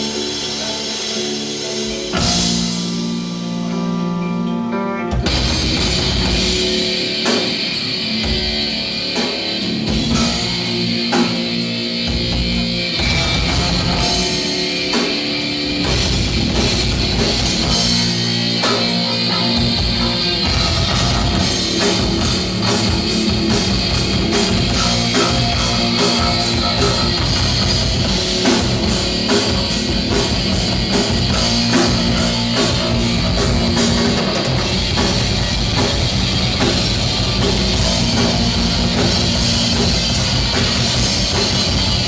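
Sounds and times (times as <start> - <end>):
heavy metal band playing: 0.0 - 42.0.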